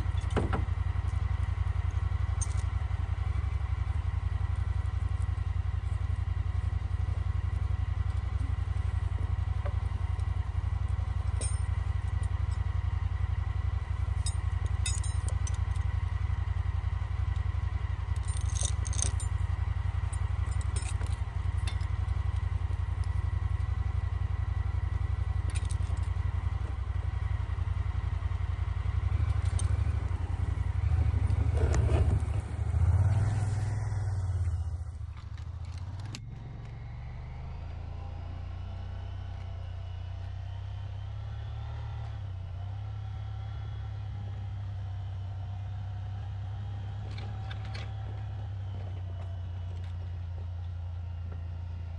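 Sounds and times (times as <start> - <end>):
light clinks and rattles: 0.0 - 4.0, 7.0 - 12.9, 14.0 - 16.0, 17.3 - 27.1, 29.2 - 33.2
vehicle engine running: 0.0 - 51.9.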